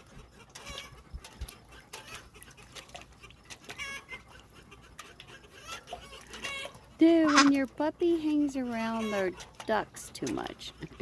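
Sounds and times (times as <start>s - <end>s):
faint animal calls: 1.7s - 7.6s.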